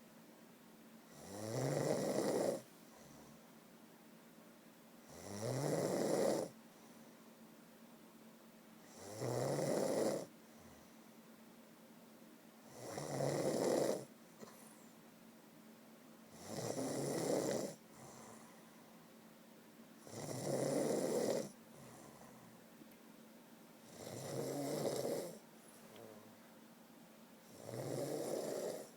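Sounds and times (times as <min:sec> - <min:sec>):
person snoring: 0:20.0 - 0:21.6, 0:23.9 - 0:25.4, 0:27.5 - 0:28.9.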